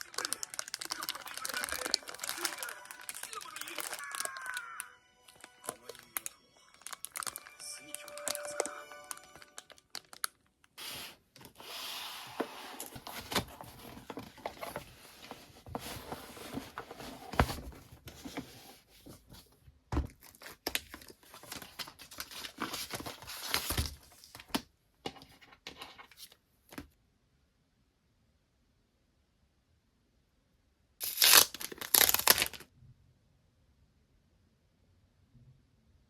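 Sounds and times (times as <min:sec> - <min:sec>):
packaging tearing and crinkling: 0:00.0 - 0:08.4, 0:09.3 - 0:11.0, 0:20.2 - 0:24.0, 0:31.0 - 0:32.6.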